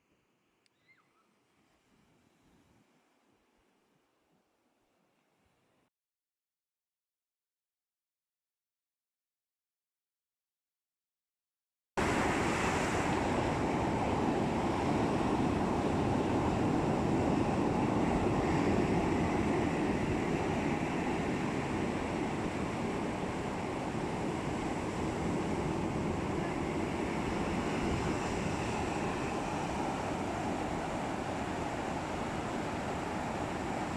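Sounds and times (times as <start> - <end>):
sea waves washing: 12.0 - 33.9
wind on microphone: 12.0 - 33.9.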